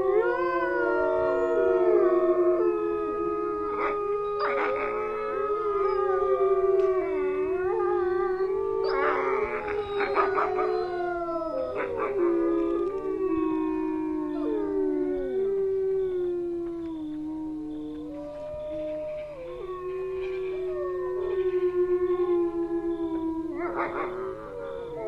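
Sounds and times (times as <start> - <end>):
wolves howling: 0.0 - 25.0.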